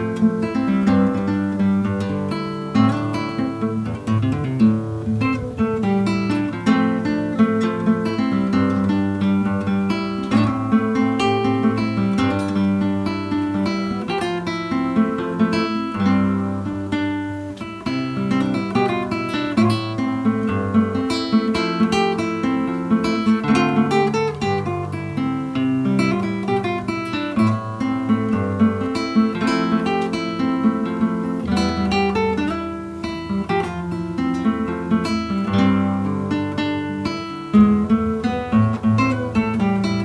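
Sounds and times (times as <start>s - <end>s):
solo classical guitar: 0.0s - 40.0s.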